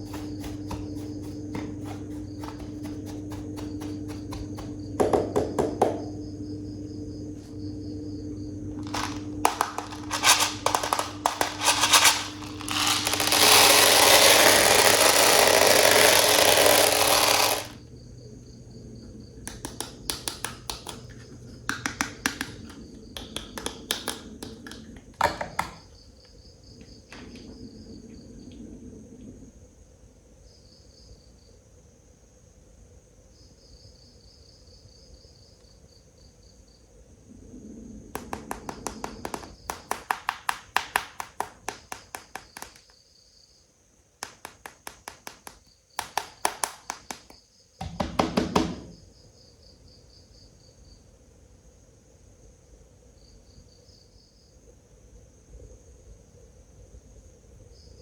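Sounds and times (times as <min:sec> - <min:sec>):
cricket-like chirps: 0:00.0 - 0:58.0
packaging rustling: 0:08.8 - 0:17.8
plastic toys clicking: 0:08.8 - 0:17.8, 0:38.2 - 0:42.9, 0:44.2 - 0:47.4.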